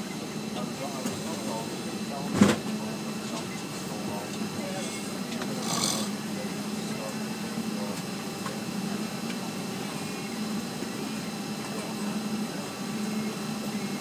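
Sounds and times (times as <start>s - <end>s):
man snoring: 5.6s - 6.2s.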